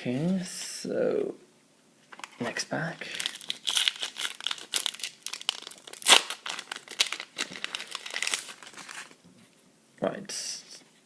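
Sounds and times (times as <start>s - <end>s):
foil wrapper crinkling: 3.1s - 9.2s.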